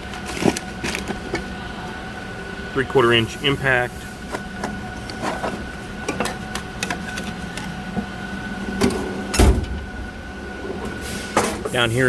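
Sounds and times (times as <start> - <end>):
metal drawers clicking and rattling: 0.0 - 1.5, 4.3 - 8.0, 8.7 - 10.0
heavy thump: 9.4 - 9.9.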